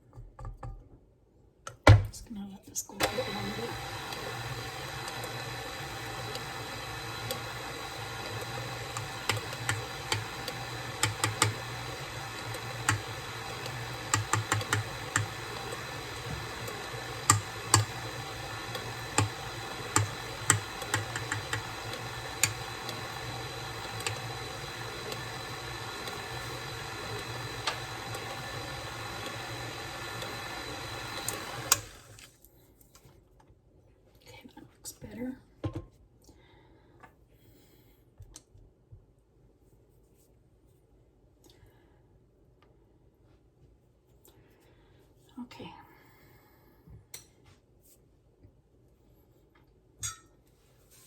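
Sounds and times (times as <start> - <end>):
electric mixer beating batter: 3.0 - 32.3
sharp clicks and knocks: 11.0 - 11.6.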